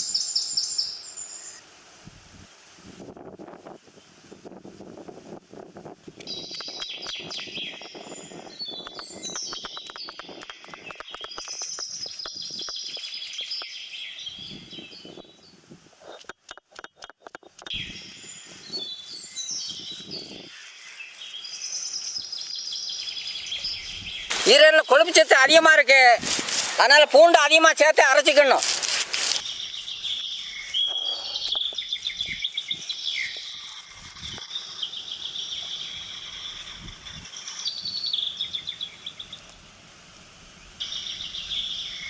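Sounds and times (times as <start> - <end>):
birds chirping: 17.7 - 39.5.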